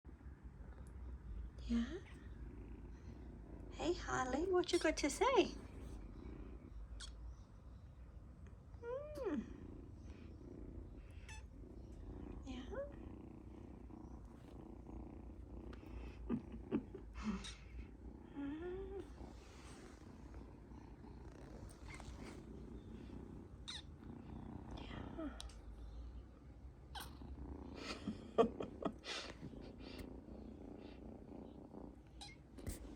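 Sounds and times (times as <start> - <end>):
kitten purring: 0.1 - 32.9
kitten high squeaks: 23.7 - 23.9.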